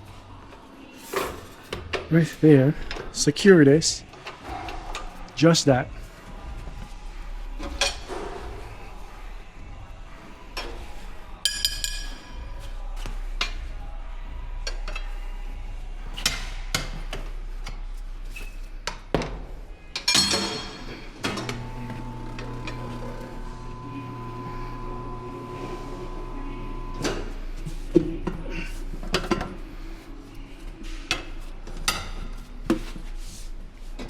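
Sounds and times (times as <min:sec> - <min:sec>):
metal tools clanking: 0:11.4 - 0:12.5, 0:20.0 - 0:21.7
machine motor humming: 0:21.4 - 0:27.6.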